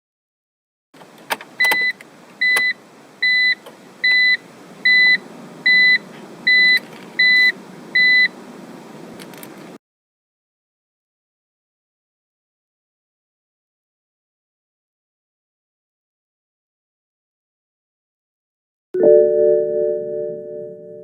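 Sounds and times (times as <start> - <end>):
car warning chime beeping: 1.6 - 8.4.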